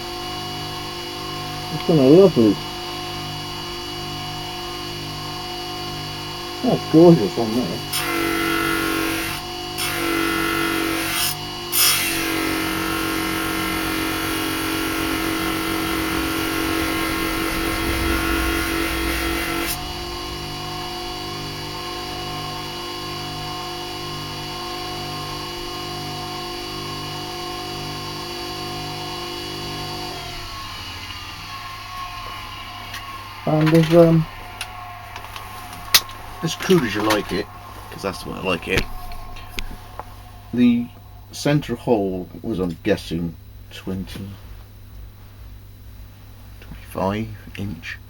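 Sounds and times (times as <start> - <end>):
grinder motor hum: 0.0 - 41.6
blade grinding on wheel: 7.8 - 23.9.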